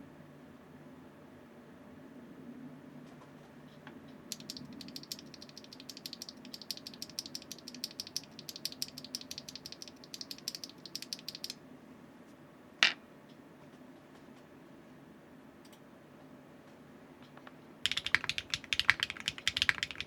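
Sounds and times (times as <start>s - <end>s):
mechanical keyboard typing: 4.3s - 11.6s, 17.9s - 20.0s.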